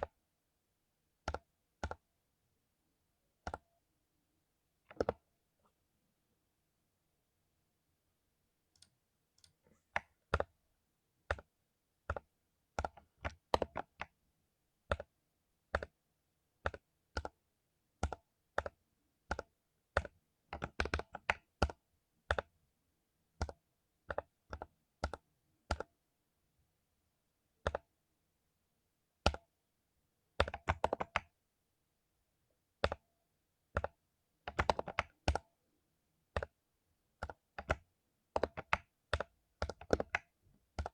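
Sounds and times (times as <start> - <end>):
mechanical keyboard typing: 1.2 - 2.1, 4.9 - 5.2, 11.2 - 14.2, 14.8 - 16.0, 16.6 - 17.4, 18.0 - 22.5, 23.4 - 25.9, 30.4 - 31.4, 32.8 - 33.0, 33.7 - 35.5, 36.3 - 40.9.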